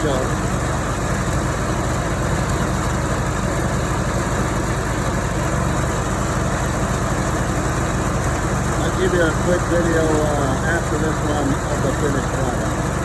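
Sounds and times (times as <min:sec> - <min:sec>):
stump grinder engine running: 0:00.0 - 0:13.0.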